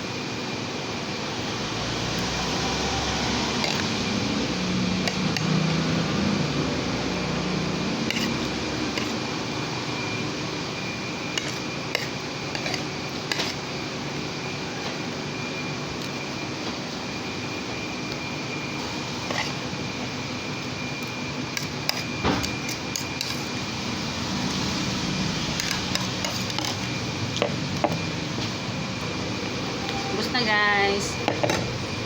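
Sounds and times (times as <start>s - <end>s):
utensils clicking on a plate: 3.6s - 3.9s, 11.4s - 13.6s, 25.6s - 27.9s.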